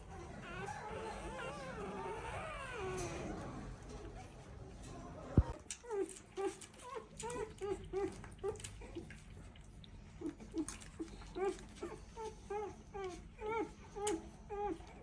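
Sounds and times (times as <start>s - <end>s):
dog whimpering: 0.1s - 3.8s, 5.8s - 9.1s, 10.2s - 15.0s.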